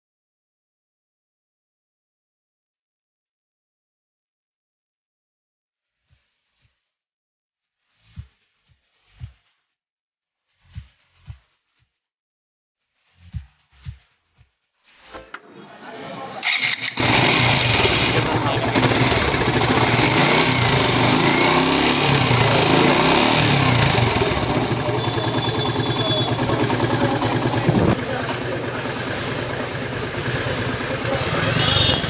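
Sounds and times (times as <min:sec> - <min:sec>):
motorcycle engine starting and revving: 0:16.4 - 0:32.0.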